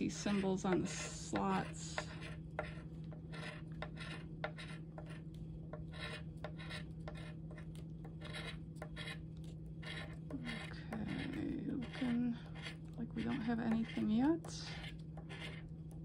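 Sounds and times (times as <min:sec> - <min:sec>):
steady low hum: 0:00.0 - 0:16.0
scratch card being scratched: 0:00.1 - 0:15.7.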